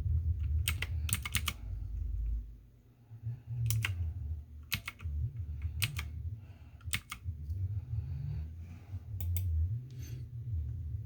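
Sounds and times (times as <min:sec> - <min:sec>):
low rumble: 0:00.0 - 0:11.0
computer keyboard keys clicking: 0:00.4 - 0:01.6, 0:03.6 - 0:04.0, 0:04.6 - 0:06.1, 0:06.8 - 0:07.2.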